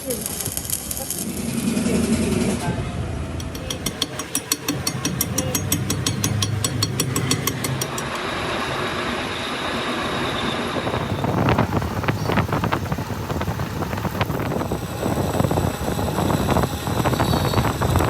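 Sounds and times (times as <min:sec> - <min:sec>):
workshop machinery hissing: 0:00.0 - 0:18.0
knocking and clattering: 0:03.4 - 0:08.1
faint high whine: 0:07.8 - 0:18.0.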